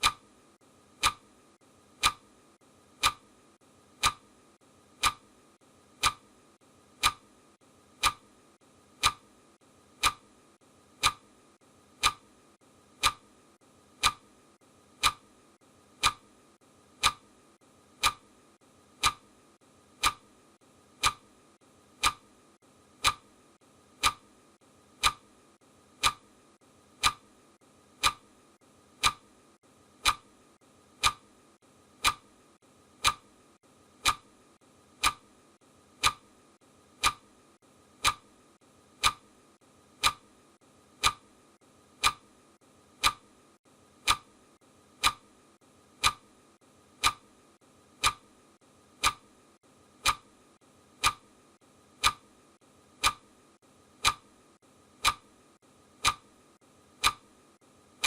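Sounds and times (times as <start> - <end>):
clock ticking: 0.0 - 0.3, 1.0 - 1.3, 2.0 - 2.3, 3.0 - 3.3, 4.0 - 4.3, 5.0 - 5.3, 6.0 - 6.3, 7.0 - 7.3, 8.0 - 8.3, 9.0 - 9.3, 10.0 - 10.3, 11.0 - 11.3, 12.0 - 12.3, 13.0 - 13.3, 14.0 - 14.3, 15.0 - 15.3, 16.0 - 16.3, 17.0 - 17.3, 18.0 - 18.3, 19.0 - 19.3, 20.0 - 20.3, 21.0 - 21.3, 22.0 - 22.3, 23.0 - 23.4, 24.0 - 24.3, 25.0 - 25.3, 26.0 - 26.3, 27.0 - 27.3, 28.0 - 28.3, 29.0 - 29.3, 30.0 - 30.3, 31.0 - 31.3, 32.0 - 32.3, 33.0 - 33.3, 34.0 - 34.3, 35.0 - 35.3, 36.0 - 36.3, 37.0 - 37.3, 38.0 - 38.3, 39.0 - 39.3, 40.0 - 40.3, 41.0 - 41.3, 42.0 - 42.3, 43.0 - 43.3, 44.0 - 44.3, 45.0 - 45.3, 46.0 - 46.3, 47.0 - 47.3, 48.0 - 48.3, 49.0 - 49.3, 50.0 - 50.3, 51.0 - 51.3, 52.0 - 52.3, 53.0 - 53.3, 54.0 - 54.3, 55.0 - 55.3, 56.0 - 56.3, 57.0 - 57.3
faint steady hiss: 0.0 - 58.0.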